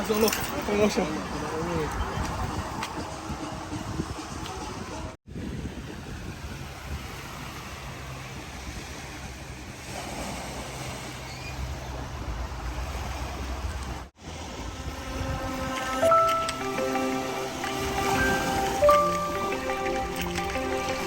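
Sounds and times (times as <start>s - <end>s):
wind rumbling on microphone: 1.2s - 16.1s
ocean surf washing: 5.4s - 21.0s.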